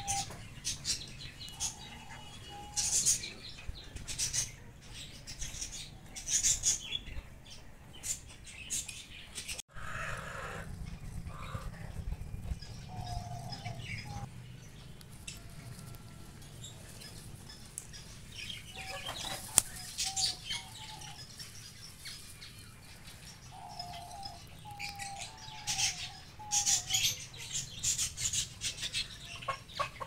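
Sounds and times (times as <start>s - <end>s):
bird calls: 0.0s - 7.2s, 8.0s - 30.0s
wings flapping: 10.0s - 14.3s.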